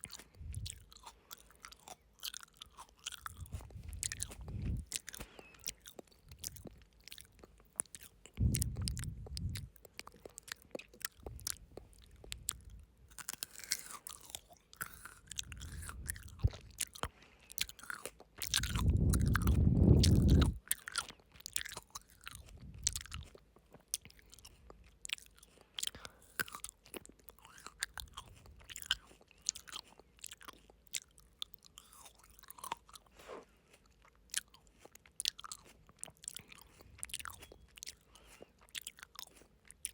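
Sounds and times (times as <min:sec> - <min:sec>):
wet mouth clicks: 0:00.0 - 0:27.0
crunchy chewing: 0:00.0 - 0:39.9.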